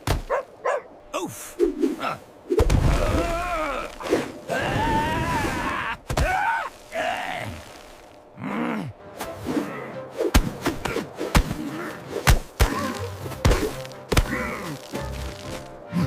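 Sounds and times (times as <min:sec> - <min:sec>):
background music: 0:00.3 - 0:16.0
sharp thuds and impacts: 0:10.3 - 0:14.4.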